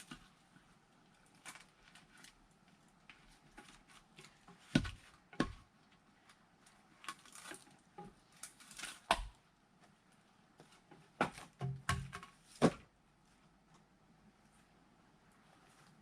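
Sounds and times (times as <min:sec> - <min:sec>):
firewood splitting with thuds: 0:11.2 - 0:12.9.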